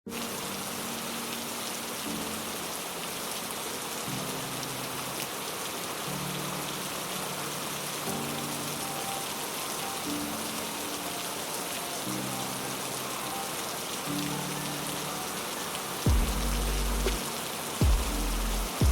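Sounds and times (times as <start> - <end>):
heavy rain: 0.1 - 18.9
soft low sustained musical notes: 6.1 - 18.9.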